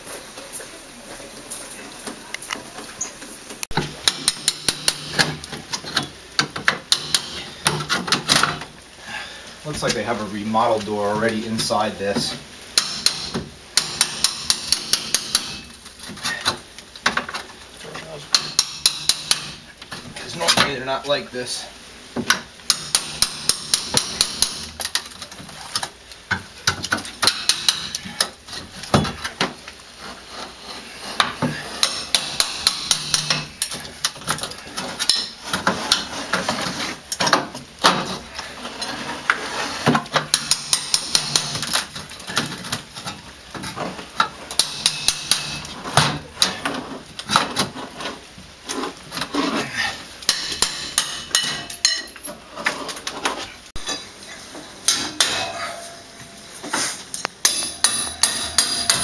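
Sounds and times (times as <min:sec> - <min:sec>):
scraping and rattling: 0:23.6 - 0:59.0.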